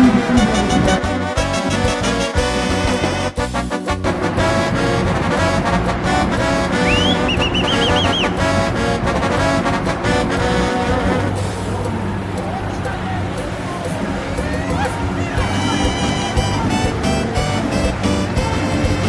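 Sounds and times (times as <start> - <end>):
brass music: 0.0 - 12.1, 15.4 - 19.0.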